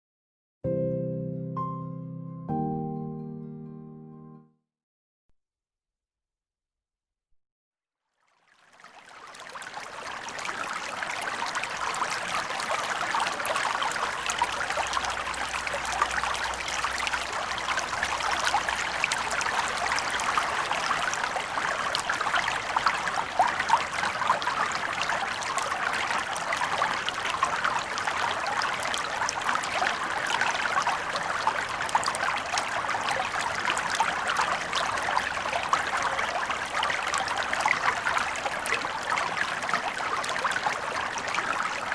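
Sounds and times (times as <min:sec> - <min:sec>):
water flowing splashily: 0:08.4 - 0:41.9.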